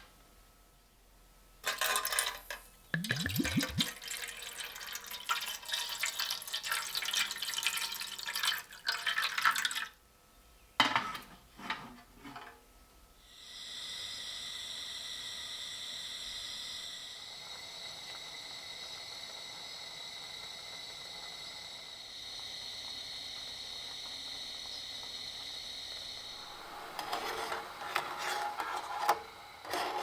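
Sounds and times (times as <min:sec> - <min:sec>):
tap water splashing over metal: 0:03.0 - 0:09.8.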